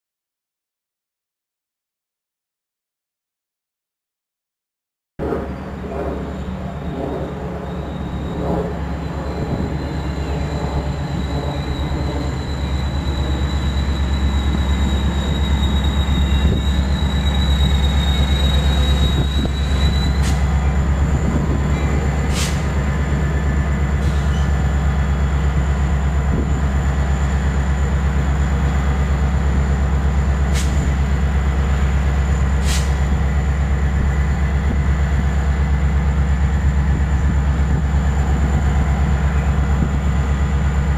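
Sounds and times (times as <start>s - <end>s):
diesel locomotive rumbling: 5.2s - 40.9s
high metallic squeal: 6.3s - 24.7s.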